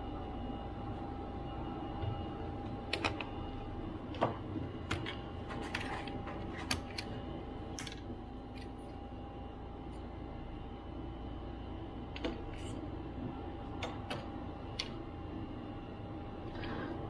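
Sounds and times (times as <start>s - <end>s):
steady background hum: 0.0s - 17.0s.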